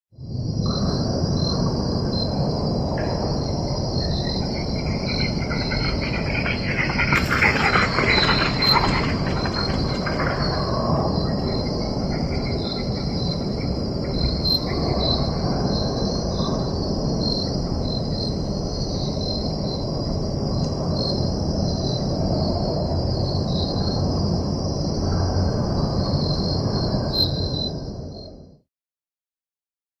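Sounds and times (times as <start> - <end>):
insects chirping: 0.2 - 28.5
low rumbling drone: 0.3 - 17.0.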